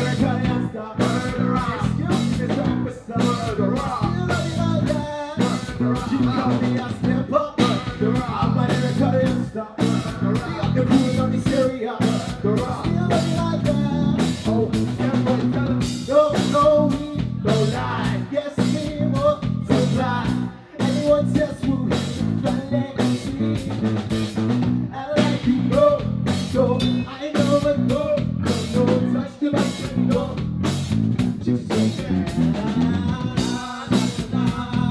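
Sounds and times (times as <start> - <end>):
drum kit beat: 0.0 - 34.9
electric guitar: 0.0 - 34.9
live band playing: 0.0 - 34.9.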